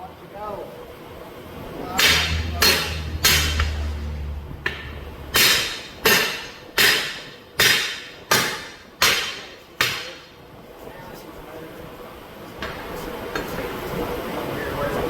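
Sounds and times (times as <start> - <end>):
hammer striking steel wheel: 1.9 - 10.2.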